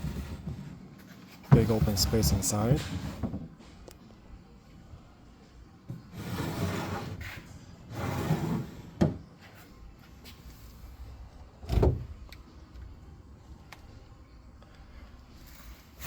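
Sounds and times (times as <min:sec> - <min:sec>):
wooden sliding door sliding: 0:00.0 - 0:00.7, 0:01.5 - 0:03.5, 0:06.1 - 0:09.2.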